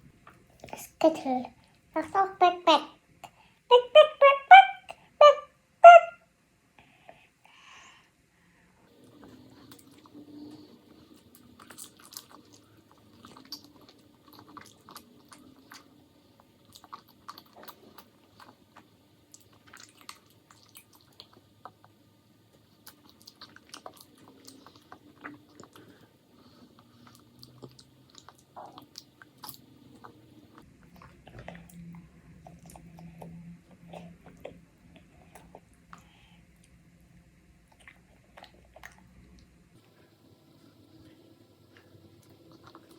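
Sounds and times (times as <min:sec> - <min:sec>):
chewing and crunching food: 0:08.9 - 0:39.9, 0:40.7 - 0:42.9.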